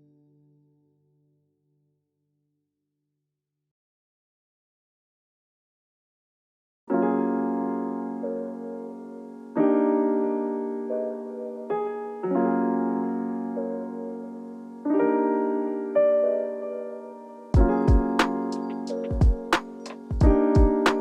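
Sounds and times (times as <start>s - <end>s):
slow gentle piano music: 6.9s - 21.0s.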